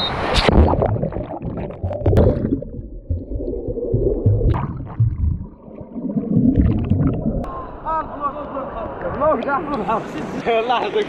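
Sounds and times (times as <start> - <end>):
underwater splash: 0.2 - 7.6
muffled underwater rumbling and gurgling: 0.4 - 7.6.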